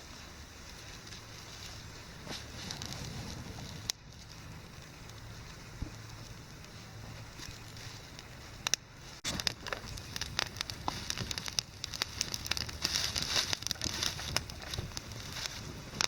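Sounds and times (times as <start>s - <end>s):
campfire crackling and popping: 0.0s - 16.0s.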